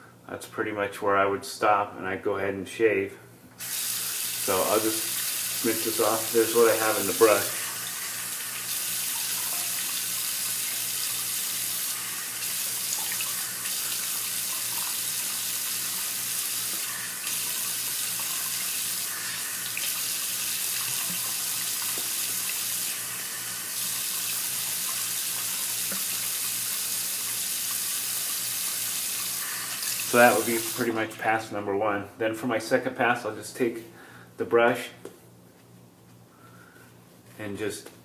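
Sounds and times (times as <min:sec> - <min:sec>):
tap water running into sink: 0:03.6 - 0:30.9.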